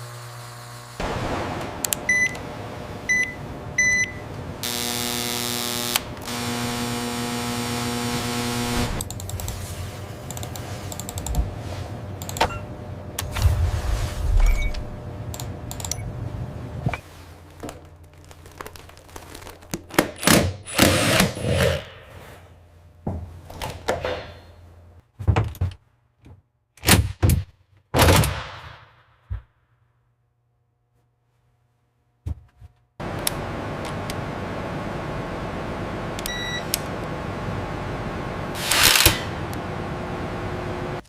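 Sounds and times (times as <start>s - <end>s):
low steady hum: 1.0s - 19.8s
scraping or rushing bursts: 13.3s - 15.0s.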